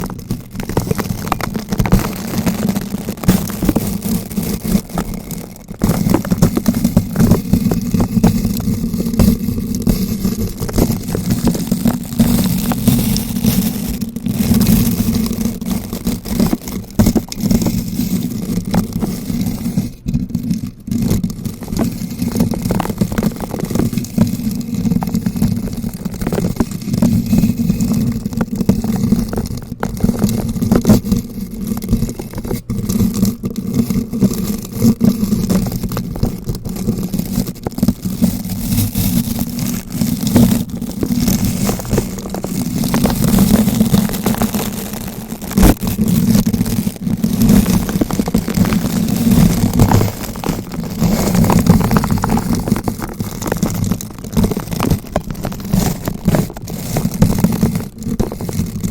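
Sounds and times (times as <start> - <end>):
low rumble of mic rubbing: 0.0 - 58.9
brush scratching on microphone: 32.9 - 58.7.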